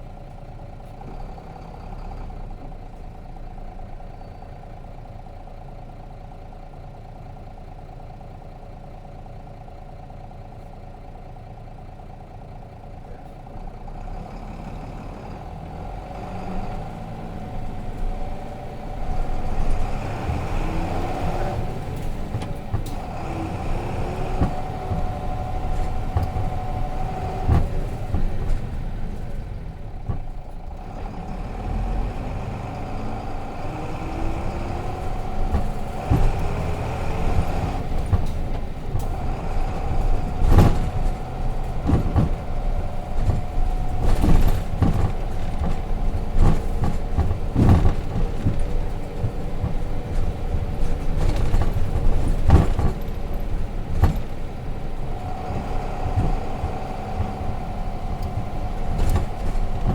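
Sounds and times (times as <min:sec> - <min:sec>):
diesel bus engine accelerating: 0:00.0 - 0:59.9
bus body knocks and rattles: 0:15.5 - 0:59.9.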